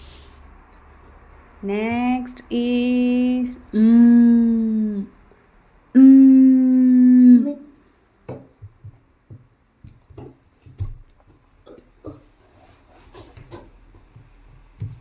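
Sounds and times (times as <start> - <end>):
person humming: 3.2 - 5.2, 6.0 - 7.8
soft knocks and scuffs: 8.2 - 15.0.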